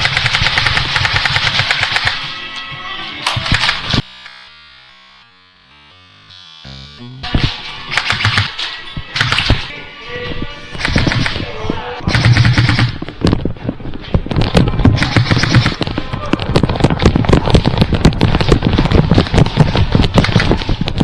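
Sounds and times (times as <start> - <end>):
airsoft gun rapid bursts: 0.0 - 2.3, 3.3 - 4.1, 7.9 - 8.6, 9.2 - 9.6, 10.8 - 11.4, 12.1 - 13.0, 15.0 - 15.8, 20.1 - 20.6.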